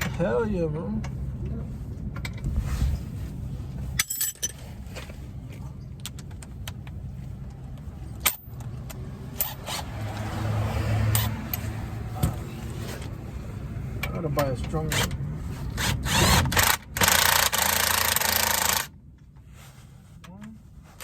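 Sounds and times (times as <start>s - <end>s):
metal tools clinking on bolts: 4.0s - 4.6s, 8.1s - 9.9s.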